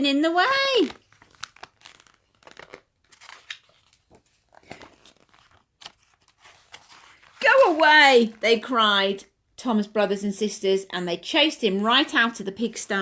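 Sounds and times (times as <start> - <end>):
paper pages rustling: 0.8 - 8.4.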